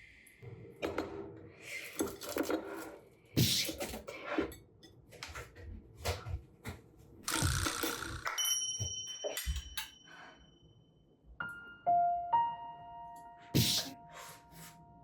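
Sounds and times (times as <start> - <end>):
dishes and utensils clattering: 0.6 - 6.4, 7.4 - 10.3.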